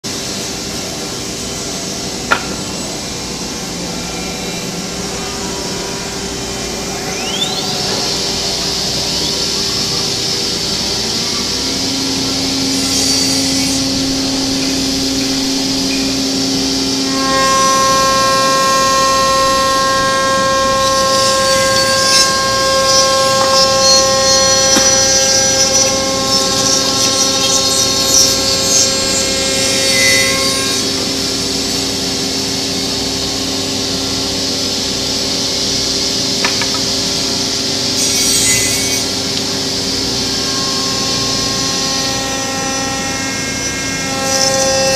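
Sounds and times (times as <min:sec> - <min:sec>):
cnc router machine noise: 0:00.1 - 0:44.9
motor whine: 0:00.1 - 0:44.9
louder steady tones: 0:02.0 - 0:31.5.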